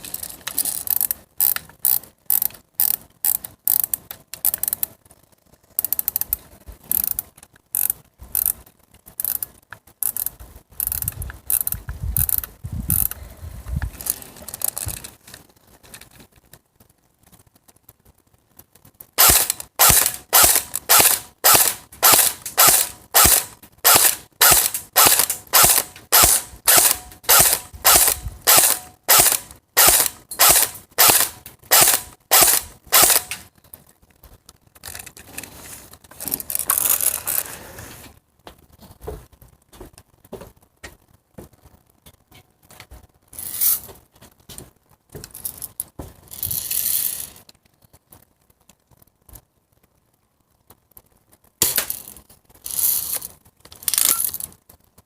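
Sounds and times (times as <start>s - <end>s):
air gun mechanism clicking: 19.2s - 33.4s.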